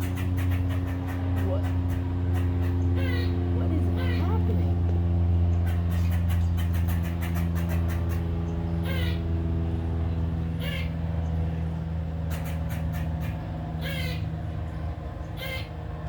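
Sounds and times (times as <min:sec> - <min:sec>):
squirrel chattering clicks: 0:00.0 - 0:03.4, 0:05.6 - 0:09.2, 0:12.3 - 0:14.2
squirrel squeaky calls: 0:00.0 - 0:04.7, 0:05.5 - 0:09.4, 0:10.5 - 0:11.5, 0:12.2 - 0:14.5, 0:15.2 - 0:16.0
steady low hum: 0:00.0 - 0:16.0.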